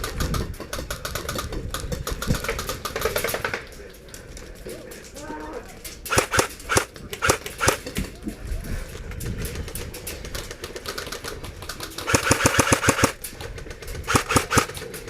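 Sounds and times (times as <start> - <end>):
airsoft guns firing: 6.1 - 8.0, 12.0 - 13.2, 14.0 - 15.0.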